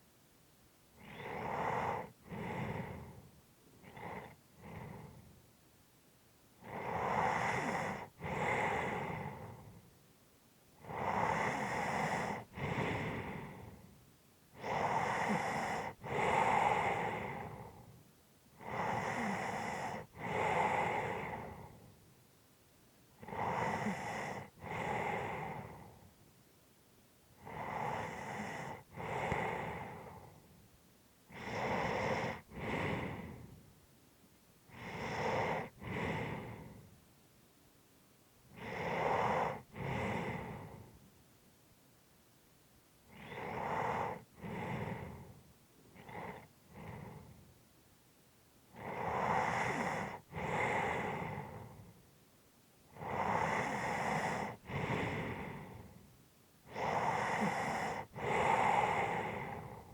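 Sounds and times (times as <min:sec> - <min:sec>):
person breathing heavily: 0:10.9 - 0:13.9, 0:27.4 - 0:30.5, 0:31.3 - 0:33.6, 0:34.7 - 0:37.0, 0:38.6 - 0:41.0, 0:43.1 - 0:45.4, 0:53.0 - 0:56.0, 0:56.7 - 0:59.9.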